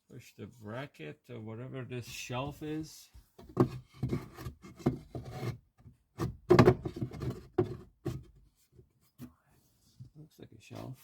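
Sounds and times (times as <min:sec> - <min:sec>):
plastic trim knocking and clicking: 0:06.2 - 0:07.8.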